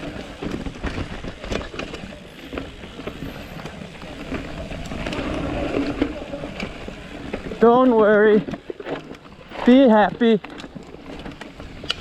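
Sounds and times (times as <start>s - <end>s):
tyre and wind rush: 0.0s - 8.5s
bike rattling clatter: 0.0s - 12.0s.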